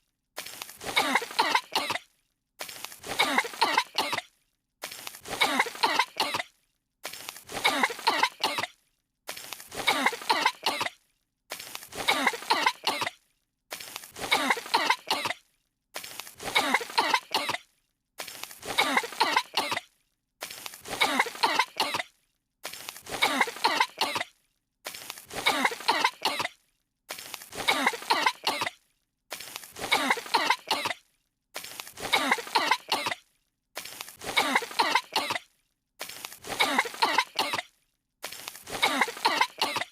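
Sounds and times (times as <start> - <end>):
cartoon voices coughing: 0.8 - 2.0, 3.0 - 4.3, 5.3 - 6.5, 7.5 - 8.8, 9.7 - 11.0, 11.9 - 13.2, 14.2 - 15.4, 16.4 - 17.6, 18.6 - 19.9, 20.9 - 22.1, 23.1 - 24.3, 25.3 - 26.6, 27.5 - 28.8, 29.8 - 31.0, 32.0 - 33.2, 34.2 - 35.5, 36.4 - 37.7, 38.7 - 39.9.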